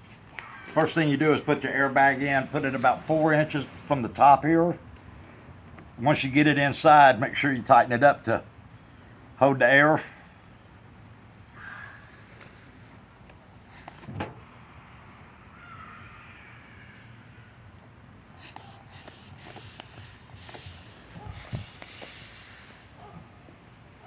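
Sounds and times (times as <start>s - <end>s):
squeeze bulb air puffs: 13.7s - 14.2s, 18.4s - 23.2s.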